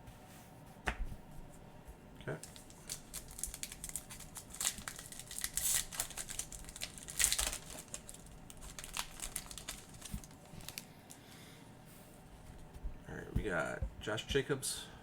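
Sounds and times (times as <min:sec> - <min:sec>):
wrapper tearing and crinkling: 0:02.4 - 0:10.8.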